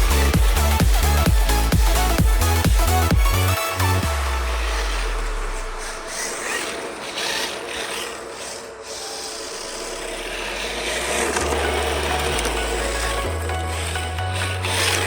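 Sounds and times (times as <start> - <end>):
electronic music bass: 0.0 - 7.1, 9.1 - 15.0
plastic tires sliding on pavement: 3.7 - 15.0.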